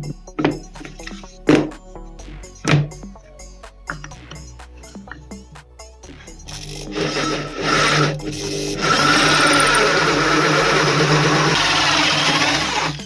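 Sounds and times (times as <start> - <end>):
power tool motor under load: 6.5 - 13.0.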